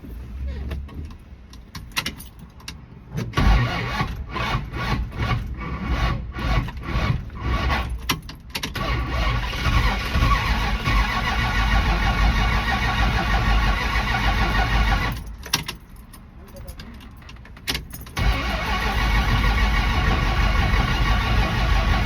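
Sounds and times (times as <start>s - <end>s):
starter cranking engine: 3.4s - 8.0s, 8.7s - 15.3s, 18.2s - 22.0s
car engine running: 18.2s - 22.0s.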